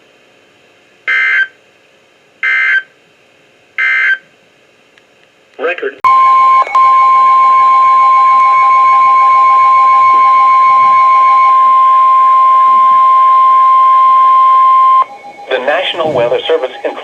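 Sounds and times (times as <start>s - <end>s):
loud steady high alarm beep: 1.1s - 1.6s, 2.4s - 2.9s, 3.8s - 4.2s, 6.0s - 17.0s
faint pulsing tone: 6.1s - 17.0s.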